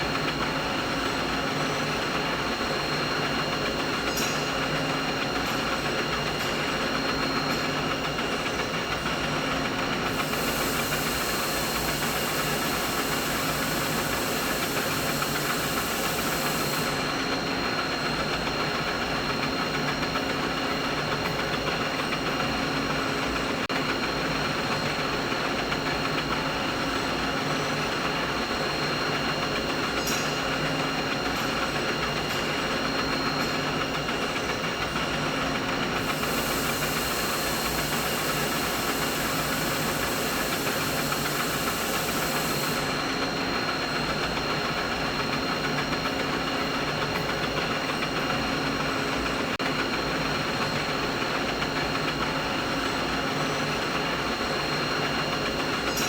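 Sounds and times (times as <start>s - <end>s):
machinery hum and hiss: 0.0s - 56.0s
faint high whine: 10.1s - 17.2s.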